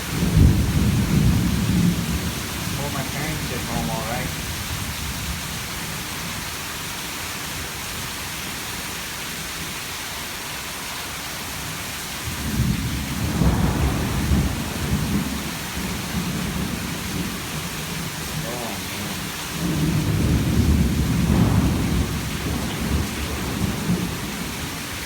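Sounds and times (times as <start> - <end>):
thunder rumbling: 0.0 - 5.4, 12.4 - 25.0
heavy rain: 0.0 - 25.0.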